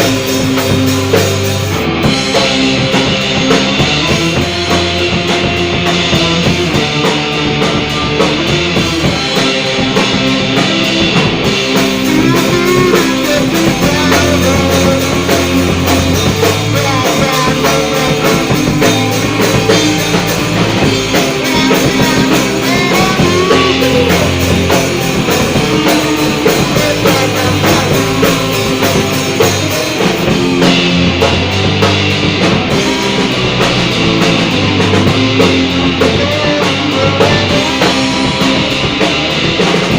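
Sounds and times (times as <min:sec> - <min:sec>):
rock band playing: 0:00.0 - 0:39.9.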